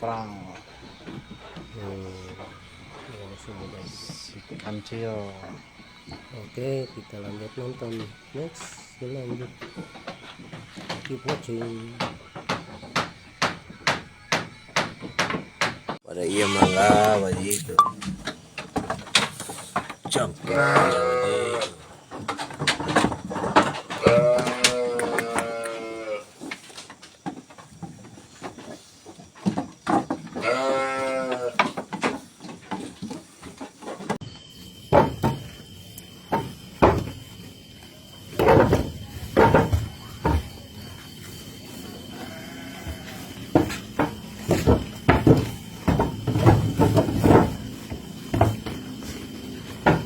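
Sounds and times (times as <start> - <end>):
knocks and thumps on wood: 9.3 - 16.0, 34.9 - 37.6, 38.2 - 41.8, 42.8 - 50.0
sheep bleating: 16.2 - 17.4, 20.5 - 21.7, 30.4 - 31.6, 42.1 - 43.2.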